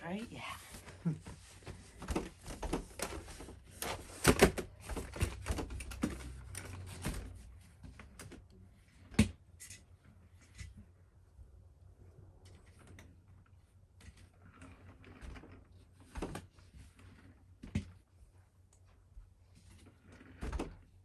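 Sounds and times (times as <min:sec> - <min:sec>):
furniture parts knocking and clattering: 0:00.9 - 0:07.5.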